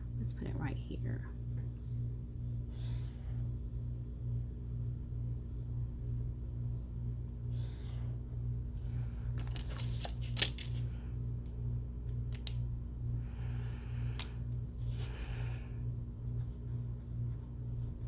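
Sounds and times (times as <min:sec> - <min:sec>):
low pulsing hum: 0:00.0 - 0:18.0
paper rustling: 0:09.4 - 0:10.8.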